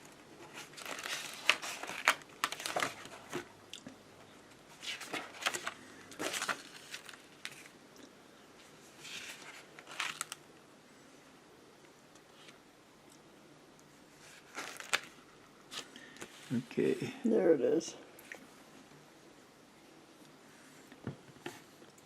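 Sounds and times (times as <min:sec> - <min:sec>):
paper pages rustling: 0:00.0 - 0:03.5, 0:04.7 - 0:07.8, 0:08.7 - 0:10.4, 0:14.2 - 0:16.5.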